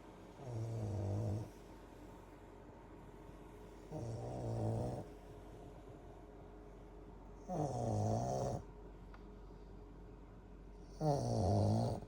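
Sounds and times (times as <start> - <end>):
deep snoring: 0.4 - 1.5, 3.9 - 5.1, 7.5 - 8.6, 11.0 - 12.0.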